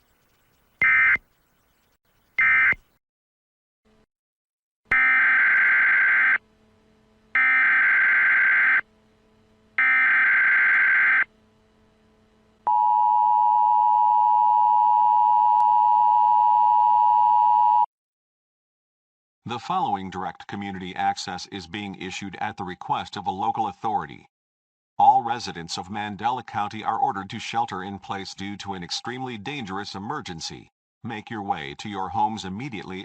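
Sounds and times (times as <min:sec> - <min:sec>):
digital data tone bursts: 0:00.0 - 0:02.8.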